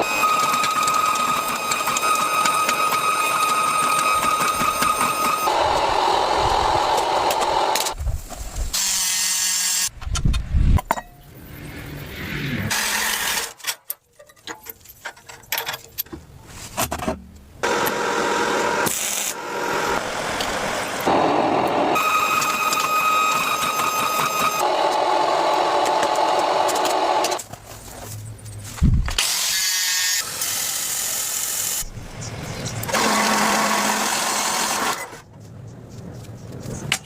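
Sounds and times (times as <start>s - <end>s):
grinding and tool noise: 0.0s - 8.0s, 8.7s - 9.9s, 12.7s - 13.8s, 17.6s - 27.4s, 29.2s - 35.3s.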